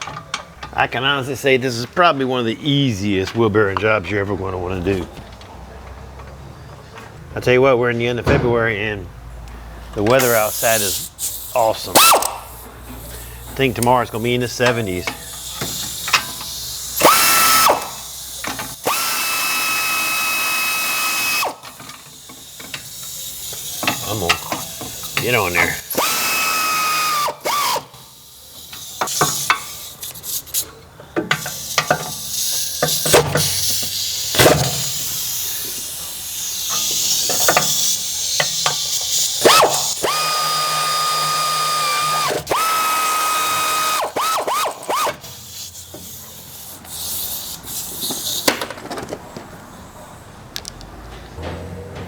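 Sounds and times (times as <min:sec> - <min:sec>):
cordless power tool whine: 0:17.0 - 0:18.0, 0:18.8 - 0:21.6, 0:25.9 - 0:27.9, 0:39.4 - 0:45.2.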